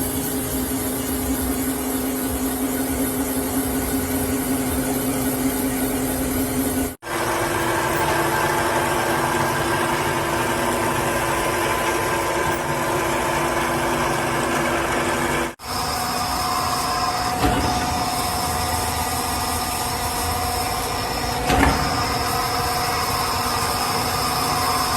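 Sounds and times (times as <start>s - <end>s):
machinery humming: 0.0s - 24.9s.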